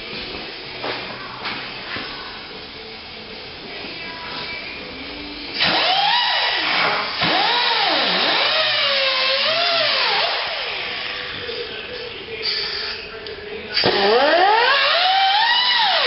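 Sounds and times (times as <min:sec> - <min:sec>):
power tool whining: 0:05.6 - 0:11.1, 0:13.8 - 0:16.0.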